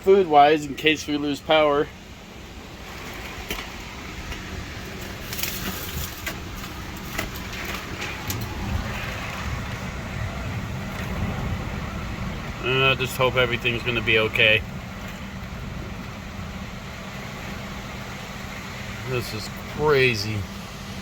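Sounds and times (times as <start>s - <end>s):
storm wind gusting: 5.7s - 19.4s.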